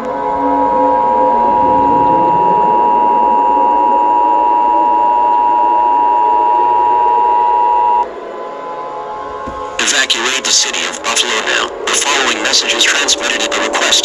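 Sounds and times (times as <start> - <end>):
static hiss: 9.3 - 14.0.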